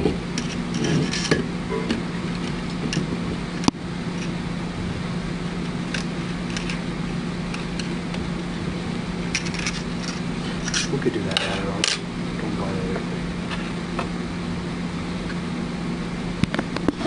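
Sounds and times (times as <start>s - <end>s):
steady mechanical hum: 0.0s - 17.0s
small parts clicking: 5.9s - 6.8s, 9.3s - 10.9s.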